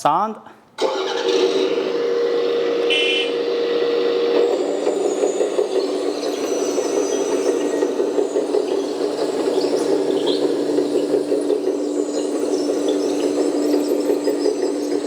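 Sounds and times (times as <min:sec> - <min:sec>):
toy excavator engine sound: 0:00.8 - 0:03.4.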